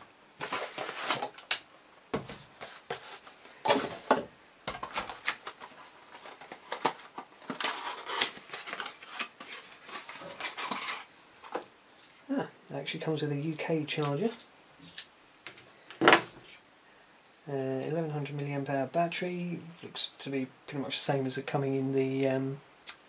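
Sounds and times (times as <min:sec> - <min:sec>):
packaging rustling and crinkling: 0:00.4 - 0:01.6, 0:02.2 - 0:12.2.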